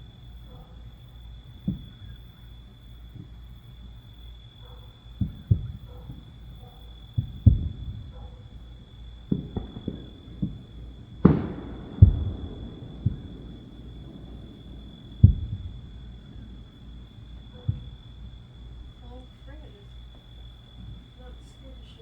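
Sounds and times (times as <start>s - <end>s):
distant fireworks thuds: 0.0s - 22.0s
sharp firework bang: 1.6s - 2.3s, 5.2s - 8.3s, 9.3s - 18.2s.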